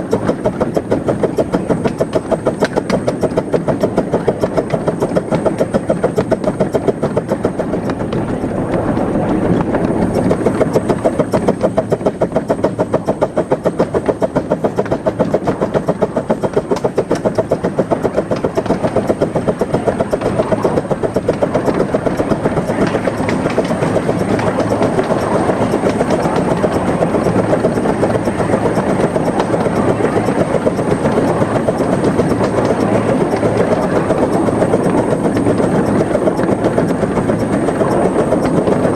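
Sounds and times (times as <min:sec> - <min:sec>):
steam locomotive exhaust beating: 0:00.0 - 0:38.9
wheels on rails: 0:00.0 - 0:38.9.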